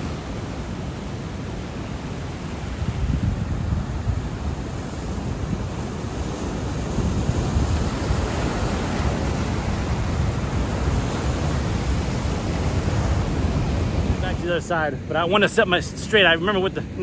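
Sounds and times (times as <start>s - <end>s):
ocean surf breaking: 0.0s - 17.0s
wind buffeting microphone: 0.0s - 17.0s.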